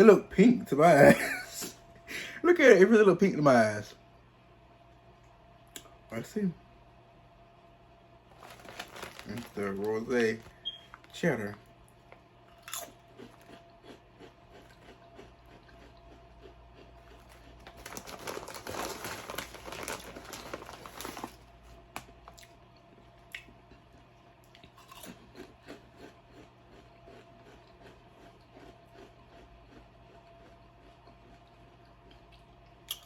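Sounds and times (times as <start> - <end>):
person chewing crunchy chips: 8.3 - 33.0.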